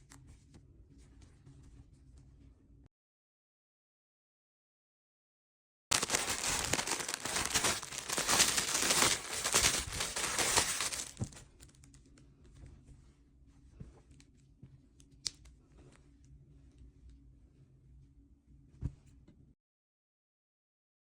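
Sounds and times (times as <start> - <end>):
packaging tearing and crinkling: 5.9 - 11.4.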